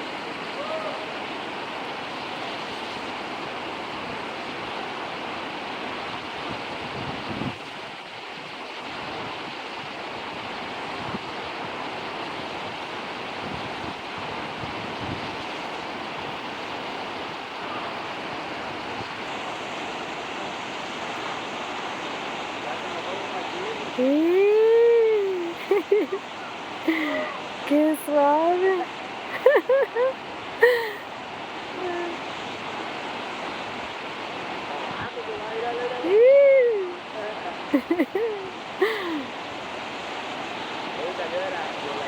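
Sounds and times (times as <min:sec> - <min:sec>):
waterfall rushing: 0:00.0 - 0:06.7, 0:09.4 - 0:42.0
wind buffeting microphone: 0:06.4 - 0:07.8.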